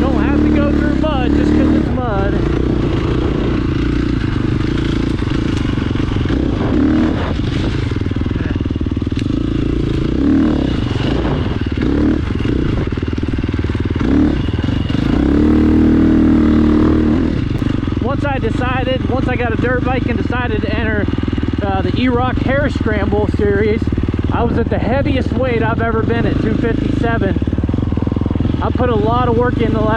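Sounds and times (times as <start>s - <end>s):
dirt bike engine revving: 0.0s - 29.9s.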